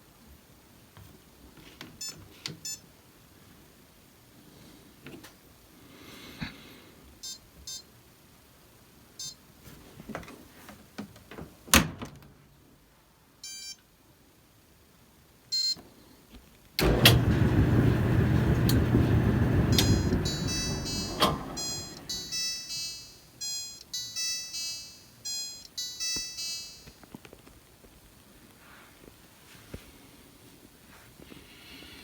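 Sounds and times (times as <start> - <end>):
washing machine running: 16.8 - 22.5
control panel beeps: 19.7 - 26.9.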